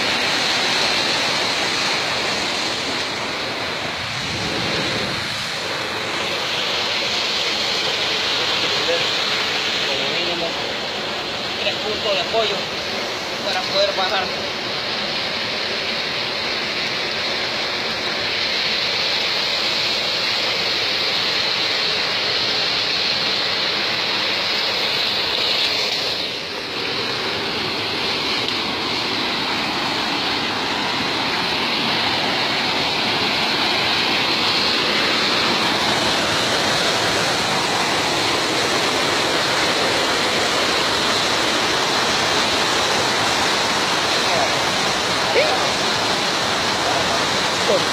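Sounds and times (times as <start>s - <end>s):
waterfall rushing: 0.0s - 47.9s.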